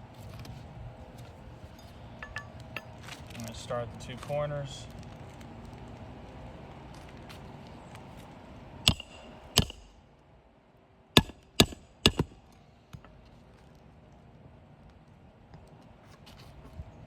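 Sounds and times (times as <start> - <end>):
hammer striking nails: 8.9 - 9.9, 11.2 - 12.4.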